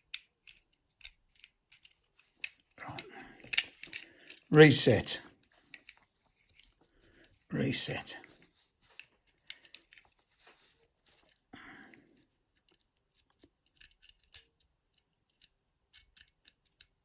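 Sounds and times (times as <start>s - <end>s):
lock pick clicks and scrapes: 0.0s - 4.5s, 12.2s - 16.9s.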